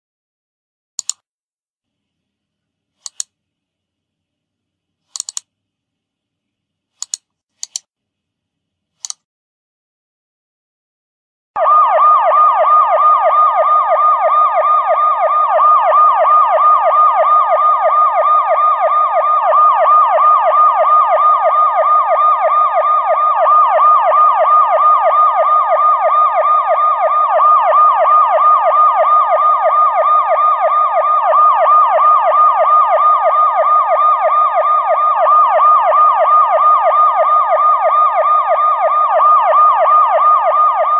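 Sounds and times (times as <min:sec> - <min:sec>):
electronic police siren yelp: 0:11.6 - 0:40.9.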